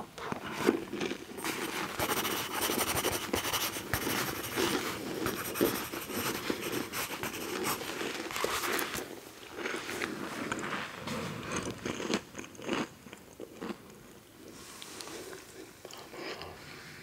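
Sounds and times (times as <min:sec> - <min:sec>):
close scratching and rustling: 0:01.4 - 0:09.1.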